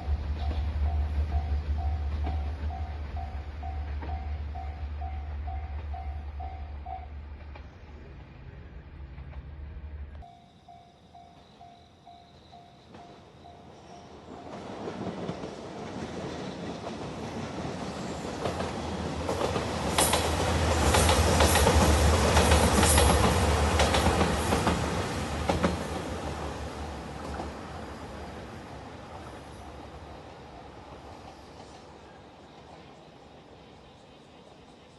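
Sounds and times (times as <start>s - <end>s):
diesel train engine drone: 0.0s - 34.9s
train wheels clicking over rail joints: 12.9s - 28.4s.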